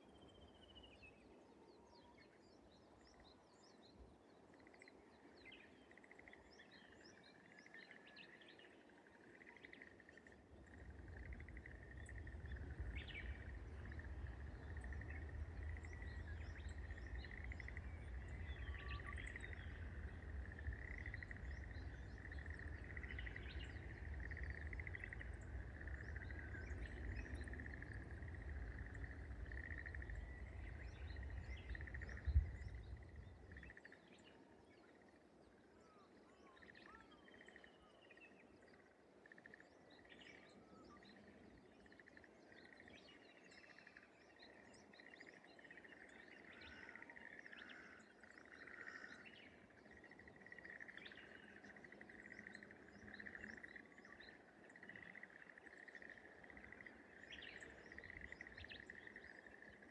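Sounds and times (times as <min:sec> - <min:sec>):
bird chirps: 0:10.7 - 0:33.9
low rumble: 0:11.8 - 0:33.5.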